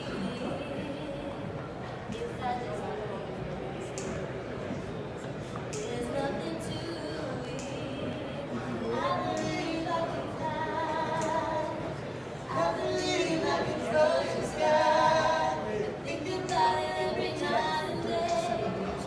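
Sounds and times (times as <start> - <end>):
group singing in harmony: 8.1 - 19.0.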